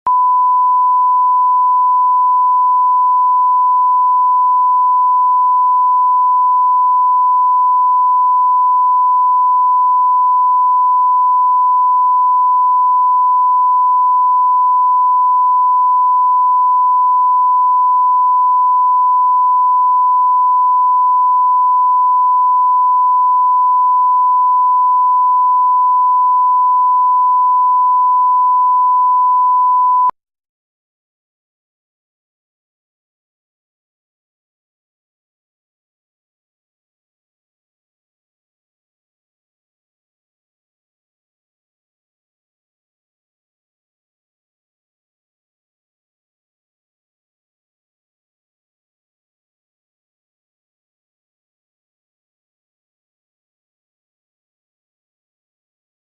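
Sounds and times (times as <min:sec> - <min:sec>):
steady sine test tone: 0:00.1 - 0:30.1.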